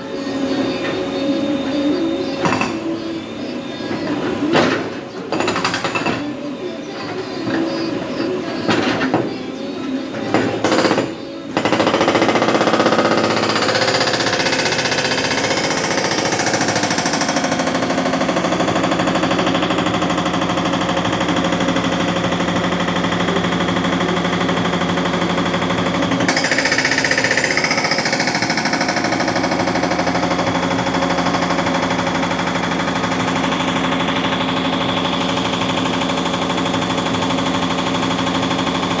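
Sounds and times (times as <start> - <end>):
rapid steady hammering: 10.3 - 39.0
diesel engine under load: 11.2 - 39.0.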